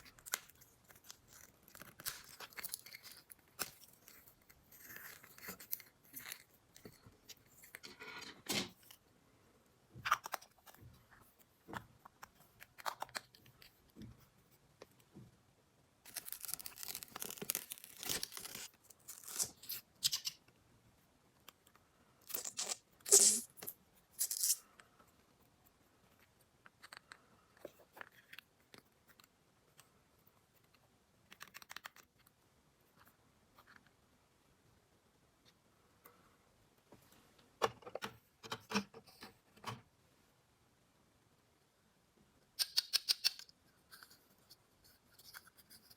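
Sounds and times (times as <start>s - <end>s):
plastic packaging crinkling: 16.1s - 19.7s.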